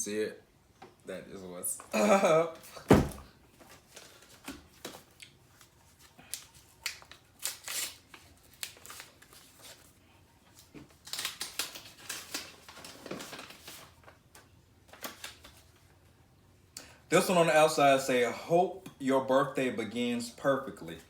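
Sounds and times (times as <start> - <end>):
paper rustling and crinkling: 2.6 - 15.9.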